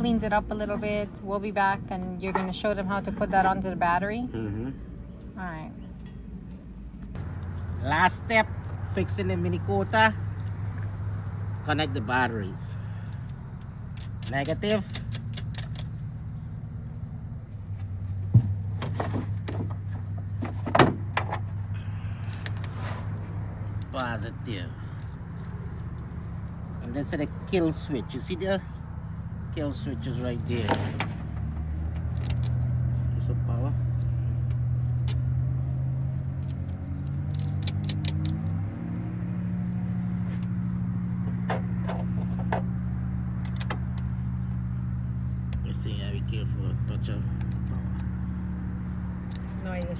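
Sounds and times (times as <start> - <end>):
steady low hum: 0.0 - 37.2
metal clicks of battery terminals: 5.9 - 7.5, 13.1 - 16.1, 31.9 - 32.6, 36.3 - 38.5, 43.3 - 44.9.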